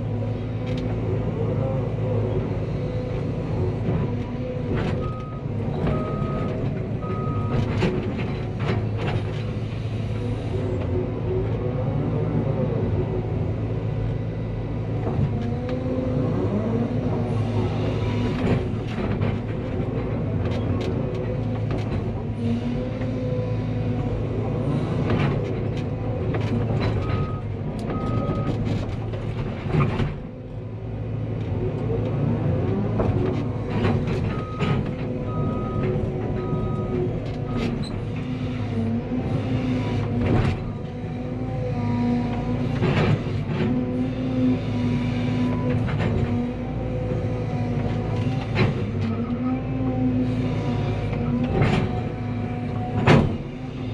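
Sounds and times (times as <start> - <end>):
excavator diesel engine running: 0.0 - 53.9
knocks and clanks: 52.9 - 53.5.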